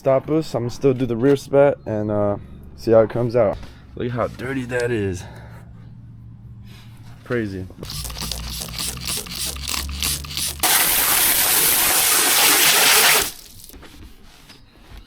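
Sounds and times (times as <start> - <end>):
water spray hissing: 7.8 - 13.8.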